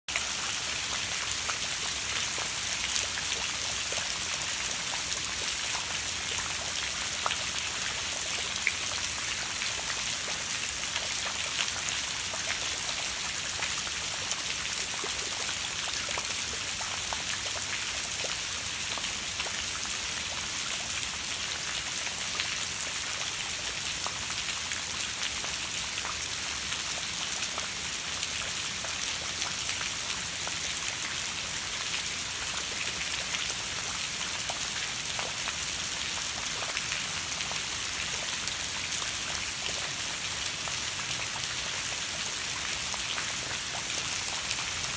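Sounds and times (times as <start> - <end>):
steady rain falling: 0.1 - 44.9.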